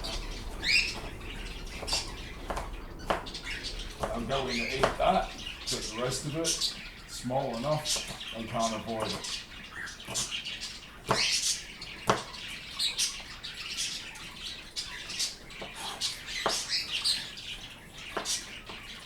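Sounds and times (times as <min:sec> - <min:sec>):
sharp knocks: 0:00.0 - 0:08.3
birds chirping: 0:00.0 - 0:19.0.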